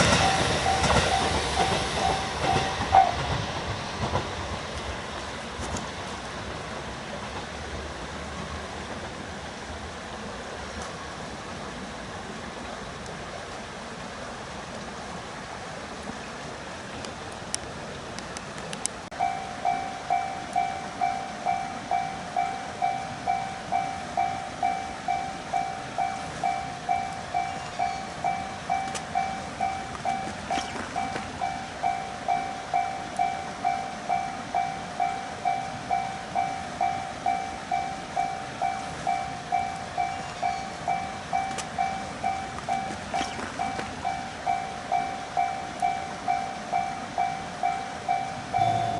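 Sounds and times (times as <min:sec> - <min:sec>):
level crossing alarm bell: 0:00.0 - 0:03.4, 0:19.2 - 0:48.9
rushing noise from railway line: 0:00.0 - 0:48.9.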